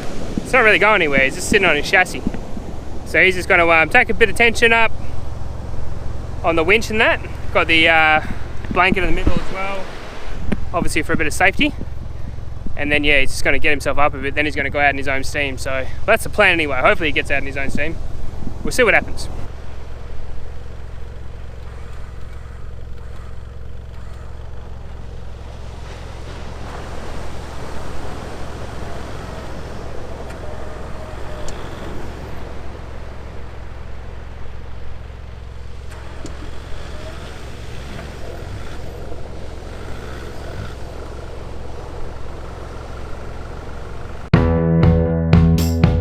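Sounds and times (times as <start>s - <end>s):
vehicle engine idling: 0.0s - 9.2s, 9.8s - 44.3s
music: 44.3s - 46.0s.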